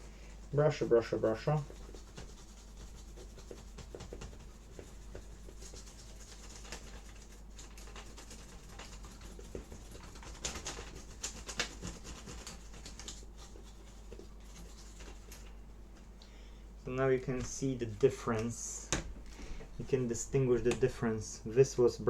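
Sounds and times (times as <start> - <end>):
brush bristles scrubbing: 0.0 - 15.5.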